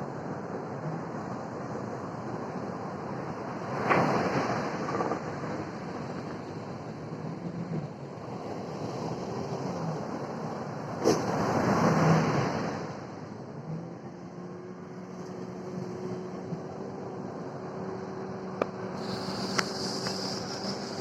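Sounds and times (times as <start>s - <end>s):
steady wash of surf: 0.2s - 13.4s, 18.9s - 21.0s.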